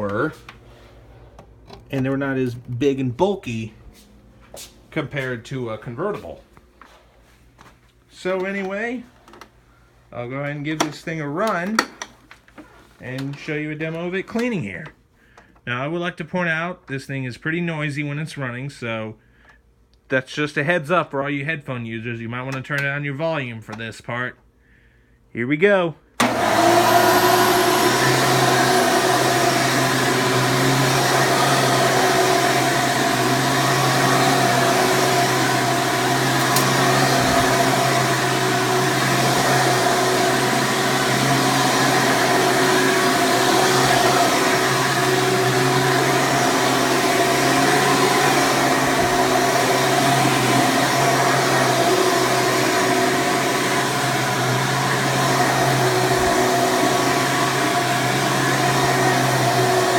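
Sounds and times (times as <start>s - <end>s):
upright vacuum running: 26.2s - 59.9s.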